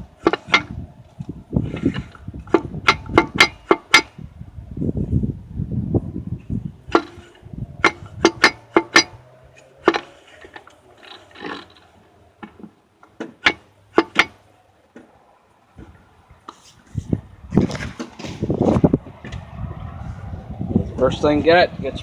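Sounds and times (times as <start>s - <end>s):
metal parts knocking and clicking: 1.8s - 4.1s, 6.9s - 9.2s, 9.8s - 14.4s.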